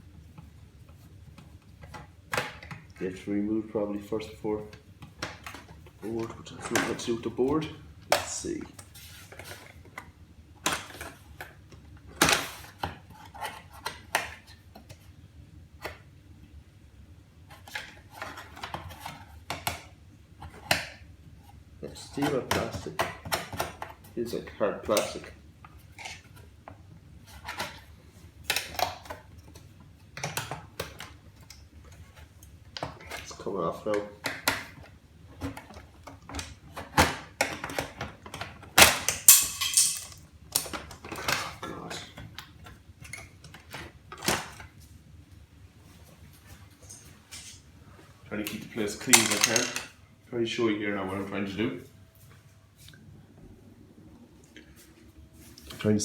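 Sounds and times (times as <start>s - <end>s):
typewriter parts clicking and clattering: 39.1s - 40.2s.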